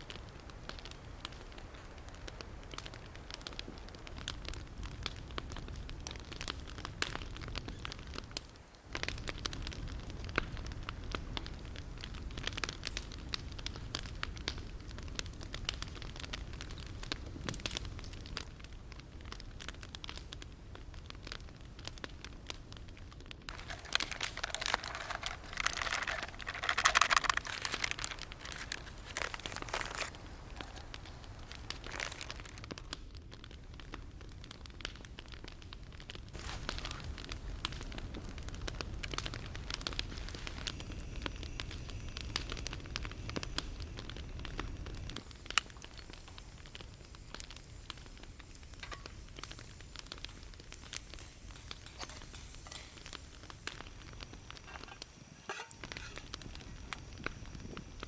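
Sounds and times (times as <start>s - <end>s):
wood fire crackling and popping: 0.0s - 58.0s
crinkling and rustling: 23.5s - 32.9s, 50.2s - 53.3s, 53.9s - 56.5s.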